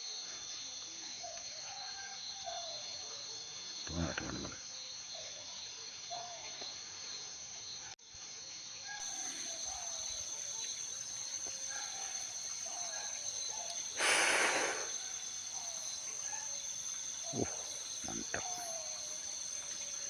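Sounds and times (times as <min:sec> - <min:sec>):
night insects chirring: 0:00.0 - 0:20.0
loud rustling hiss: 0:13.6 - 0:20.0
short falling animal calls: 0:13.7 - 0:16.5.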